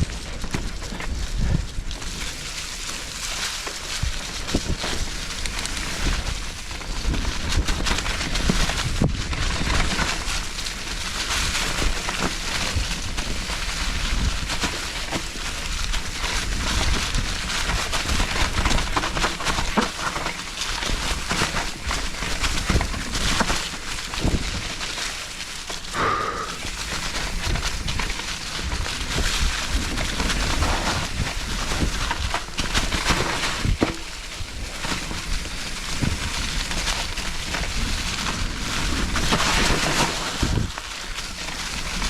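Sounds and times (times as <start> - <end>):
bike knocking and clattering: 0.0 - 25.9, 26.7 - 42.0
bike tyres rattling over rocks: 0.0 - 42.0.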